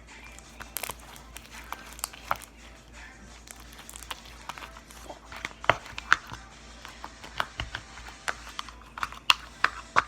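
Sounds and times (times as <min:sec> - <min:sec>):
slime clicking and popping: 0:00.4 - 0:02.5, 0:03.4 - 0:10.0.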